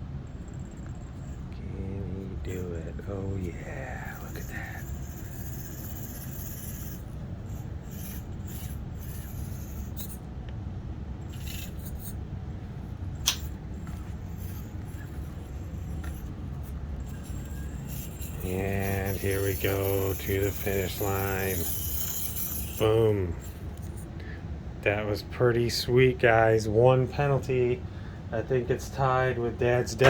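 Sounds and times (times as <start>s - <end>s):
steady low hum: 0.0s - 30.0s
sharp click: 13.2s - 13.6s.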